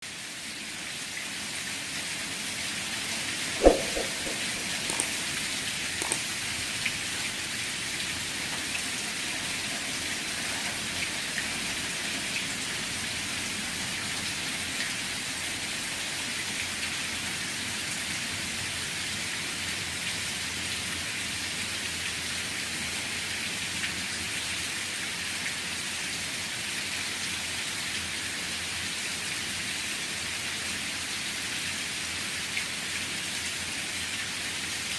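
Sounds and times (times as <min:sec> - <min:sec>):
sharp knock: 0:03.6 - 0:05.2
water drips: 0:03.6 - 0:07.0
rain falling: 0:03.6 - 0:34.9.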